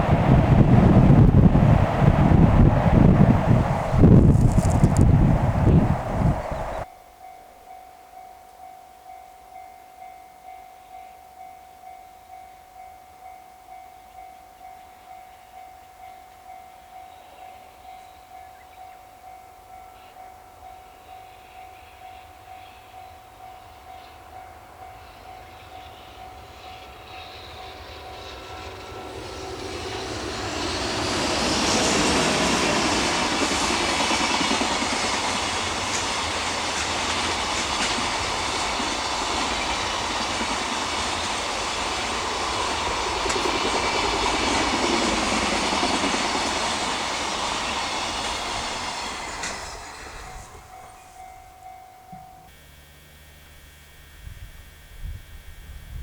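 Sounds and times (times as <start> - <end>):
freight train rumble and rail clatter: 0.0 - 6.9, 10.9 - 52.5
faint pulsing ringing: 49.7 - 56.0.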